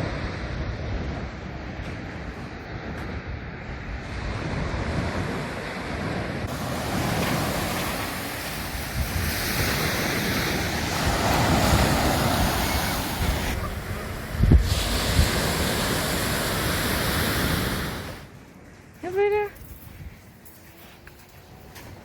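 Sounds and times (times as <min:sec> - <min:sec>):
wind rumbling on microphone: 0:00.0 - 0:20.5
sea waves washing onto beach: 0:04.0 - 0:18.3.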